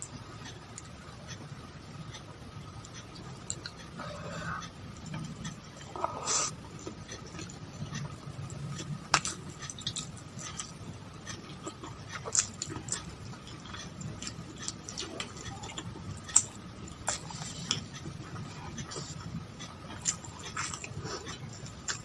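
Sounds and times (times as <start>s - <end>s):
faint steady hum: 0.0s - 22.0s
chewing and mouth clicks: 2.1s - 22.0s.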